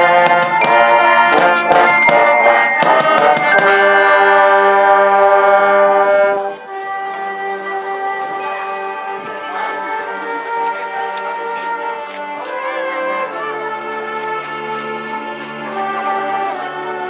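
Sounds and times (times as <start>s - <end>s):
orchestral music: 0.0s - 17.0s.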